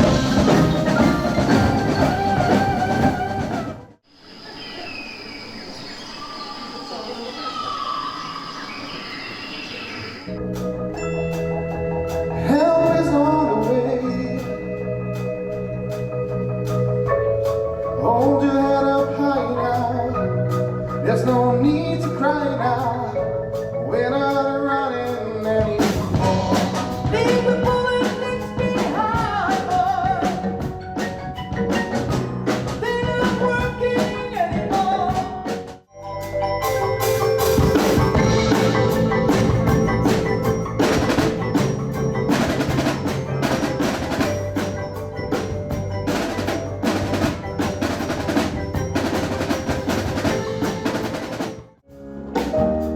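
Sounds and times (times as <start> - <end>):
mallet percussion melody: 0.0 - 3.7, 10.3 - 51.6
drums playing dense strokes: 0.0 - 4.0, 25.7 - 30.4, 36.6 - 52.9.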